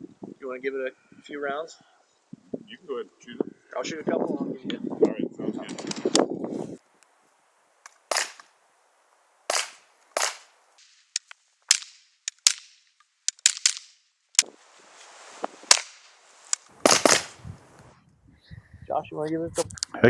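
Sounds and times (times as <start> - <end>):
suppressed gunshots: 7.9 - 8.5, 9.5 - 10.5, 16.8 - 17.7.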